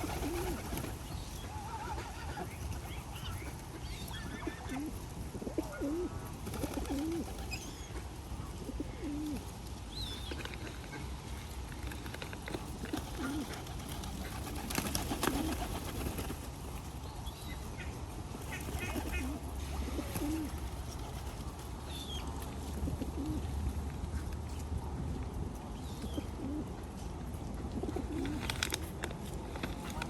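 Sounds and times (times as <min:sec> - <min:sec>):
pigeons cooing: 0:00.0 - 0:07.6, 0:08.6 - 0:09.5, 0:12.8 - 0:15.9, 0:18.6 - 0:21.1, 0:22.8 - 0:23.6, 0:26.1 - 0:26.8.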